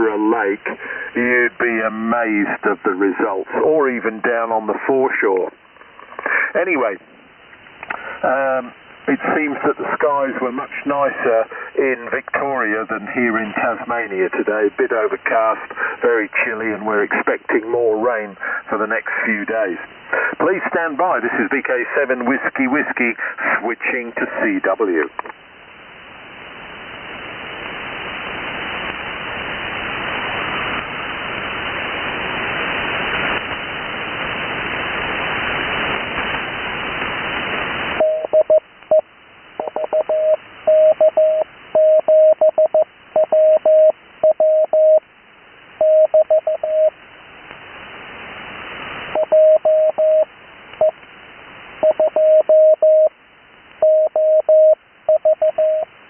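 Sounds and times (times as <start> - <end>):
radio receiver hiss: 0.0 - 56.0
morse code tone: 38.0 - 39.0, 39.6 - 45.0, 45.8 - 46.9, 49.2 - 50.3, 51.8 - 53.1, 53.8 - 55.9.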